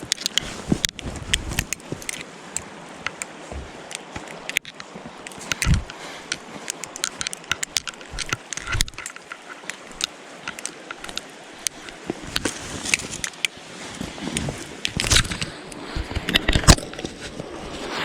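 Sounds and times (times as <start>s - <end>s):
raindrops tapping: 0.0s - 13.5s
steady rain hiss: 0.0s - 18.0s.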